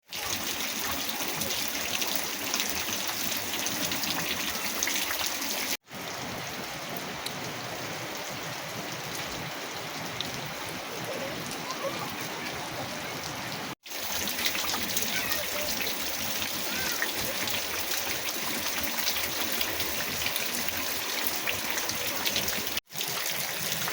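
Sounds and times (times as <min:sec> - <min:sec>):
steady rain falling: 0:00.0 - 0:23.9.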